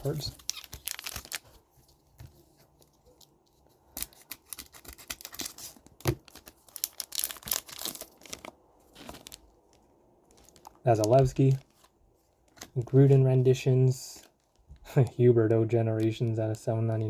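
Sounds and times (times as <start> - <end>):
wrapper tearing and crinkling: 0.0 - 1.6, 3.9 - 12.8.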